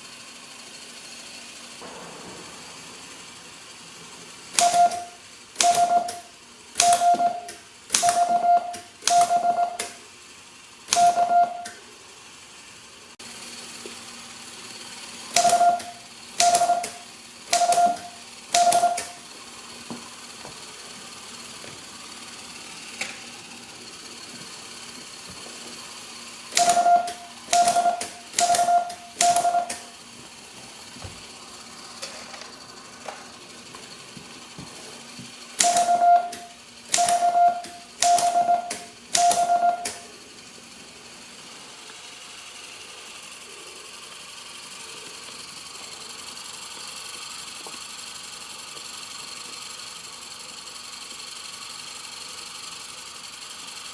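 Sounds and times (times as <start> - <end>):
morse code beeps: 4.6 - 6.2, 6.8 - 9.8, 11.0 - 11.6, 15.4 - 17.0, 17.6 - 19.2, 26.6 - 29.8, 35.6 - 39.9.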